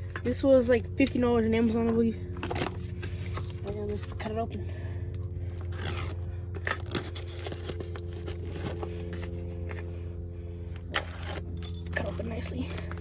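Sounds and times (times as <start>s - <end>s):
steady low hum: 0.0s - 13.0s
package being cut and torn: 5.4s - 9.8s, 10.9s - 13.0s
wrapping scraping and rustling: 5.5s - 9.9s.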